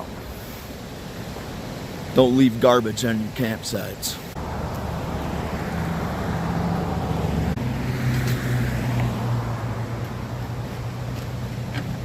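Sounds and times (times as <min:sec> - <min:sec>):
vehicle engine running: 0:04.4 - 0:12.0.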